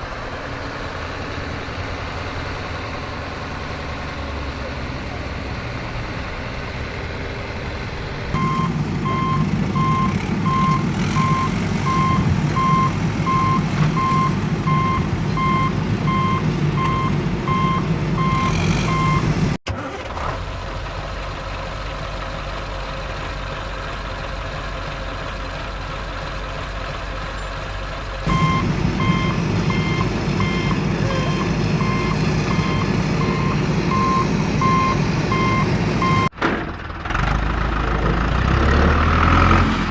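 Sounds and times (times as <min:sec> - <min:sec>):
vehicle engine running: 0:00.0 - 0:39.0
reversing alarm beeping: 0:08.4 - 0:19.3, 0:28.3 - 0:36.3.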